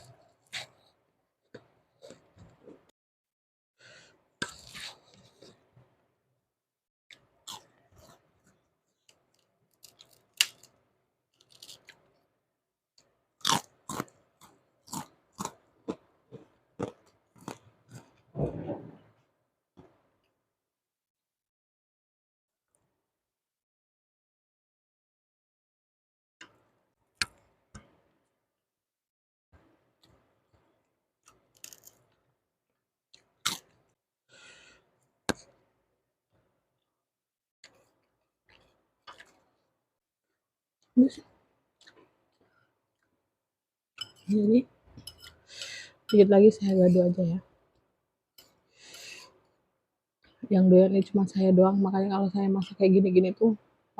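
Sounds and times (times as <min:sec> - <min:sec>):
person chewing crunchy food: 0:07.1 - 0:08.5, 0:09.1 - 0:10.7, 0:13.4 - 0:18.6, 0:33.1 - 0:33.9, 0:37.6 - 0:39.6.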